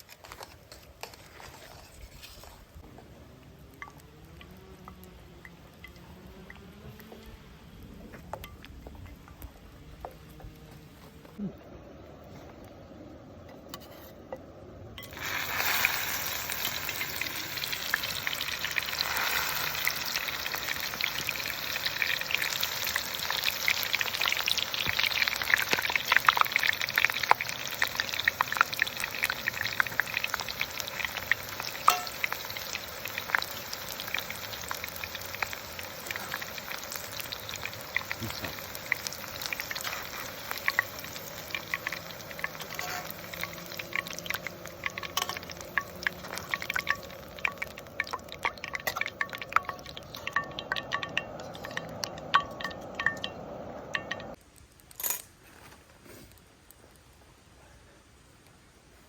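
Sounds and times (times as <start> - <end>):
food sizzling in a skillet: 15.0 - 54.4.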